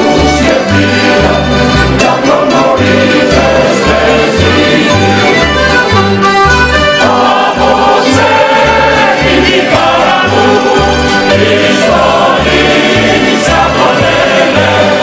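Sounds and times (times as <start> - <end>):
string accompaniment: 0.0 - 15.0
voices singing in harmony: 0.0 - 15.0.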